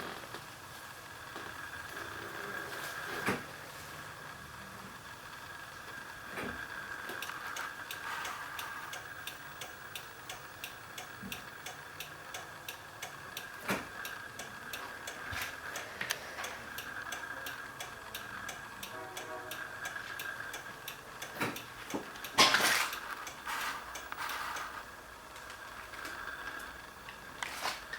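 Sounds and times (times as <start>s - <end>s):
turn signal ticking: 7.1s - 24.7s.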